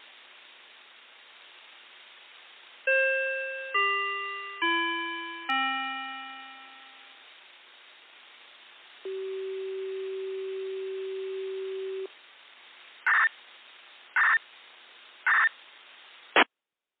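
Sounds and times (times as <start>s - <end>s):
steady low electronic tone: 9.0s - 12.1s.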